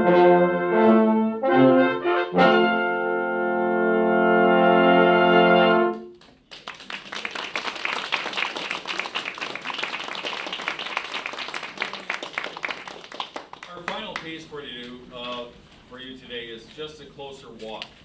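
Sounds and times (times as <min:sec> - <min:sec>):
brass chord: 0:00.0 - 0:06.1
audience applause: 0:06.2 - 0:14.4.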